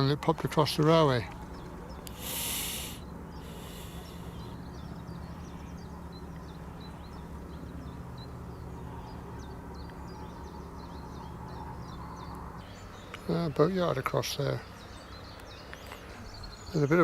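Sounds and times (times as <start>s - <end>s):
low outdoor rumble: 0.0s - 13.6s
small birds chirping: 0.0s - 17.0s.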